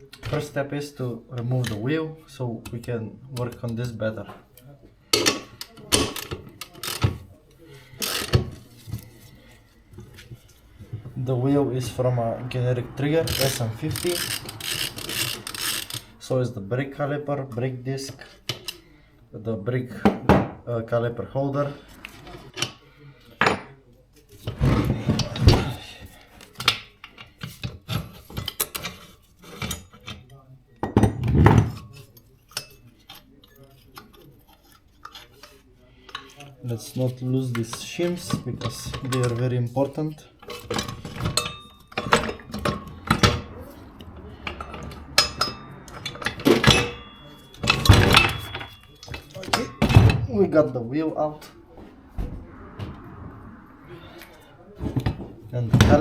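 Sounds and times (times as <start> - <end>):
metal rubbing and scraping: 6.0 - 16.6, 31.8 - 56.0
metal knocks and clinks: 40.4 - 50.2.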